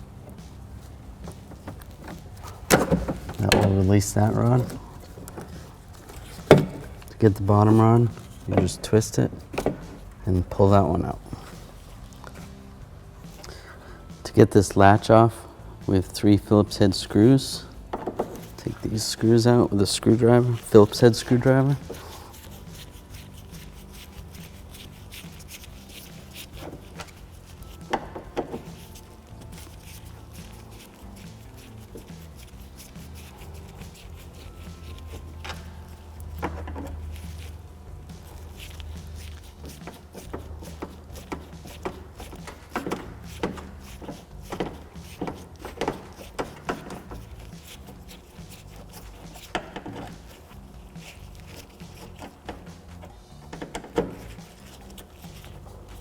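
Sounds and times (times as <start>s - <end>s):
screwdriver metal clicks and scrapes: 17.2s - 56.0s
screwdriver clicks and scrapes: 38.2s - 56.0s.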